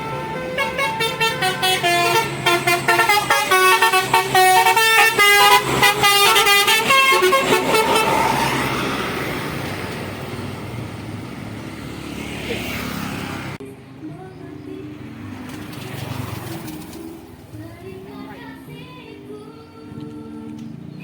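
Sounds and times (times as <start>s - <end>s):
multi-tone bus horn tune: 0.0s - 11.2s
bus engine rumble: 0.0s - 21.0s.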